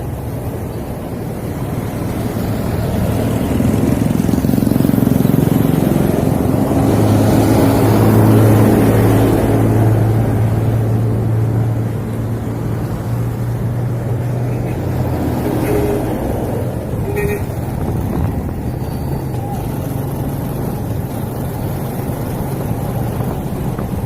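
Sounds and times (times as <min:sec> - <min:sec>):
road and wind noise: 0:00.0 - 0:24.0
motorcycle engine running: 0:01.9 - 0:08.8, 0:15.6 - 0:24.0.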